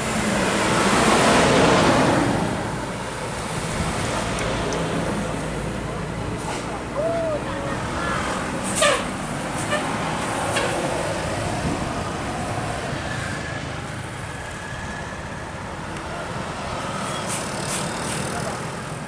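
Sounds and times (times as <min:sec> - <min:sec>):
road traffic engines and tyres: 0:00.0 - 0:19.0.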